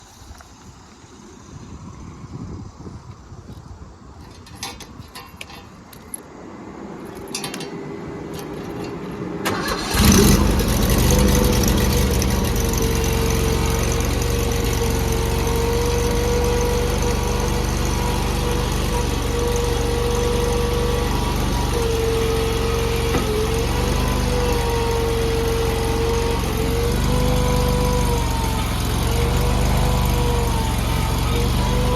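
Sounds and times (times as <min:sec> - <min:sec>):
engine starting and running: 0:07.2 - 0:31.9.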